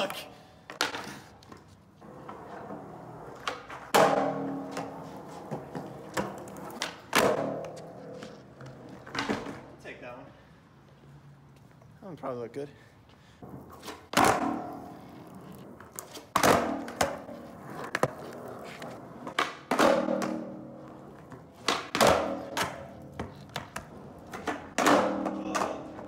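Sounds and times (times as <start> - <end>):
skateboard clacks: 0.0 - 9.7, 13.8 - 26.0
skateboard wheels rumbling: 0.2 - 9.8, 13.4 - 26.0.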